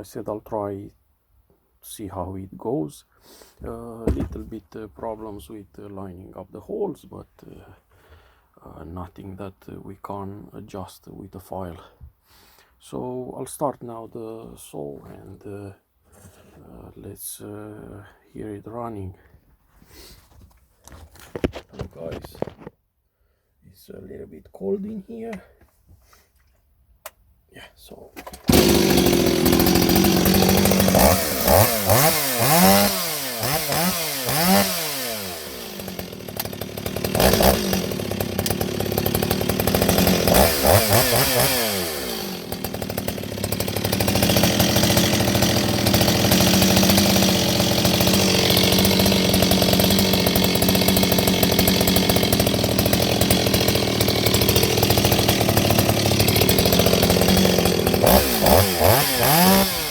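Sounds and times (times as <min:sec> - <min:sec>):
chainsaw revving: 0:03.6 - 0:04.5, 0:28.2 - 0:59.9.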